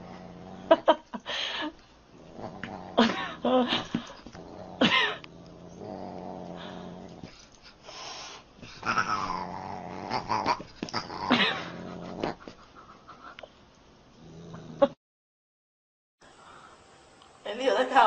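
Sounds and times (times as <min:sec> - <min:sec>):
cat growling: 0:02.2 - 0:07.3, 0:08.6 - 0:12.5.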